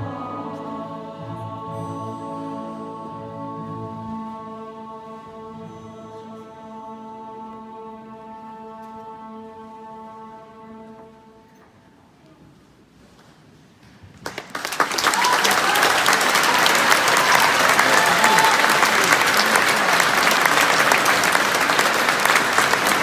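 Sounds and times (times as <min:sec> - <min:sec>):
audience applause: 0:14.2 - 0:23.0.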